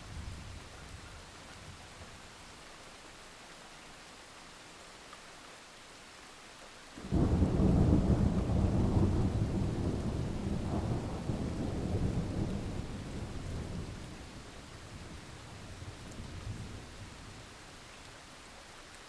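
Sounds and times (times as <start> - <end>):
rain falling: 0.0 - 19.0
thunder rumbling: 7.0 - 14.3.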